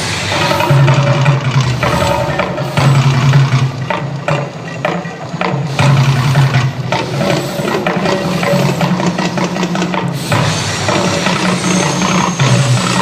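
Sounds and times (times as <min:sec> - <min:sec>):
deep rumble: 0:00.0 - 0:04.5
drum-like strikes: 0:00.0 - 0:13.0.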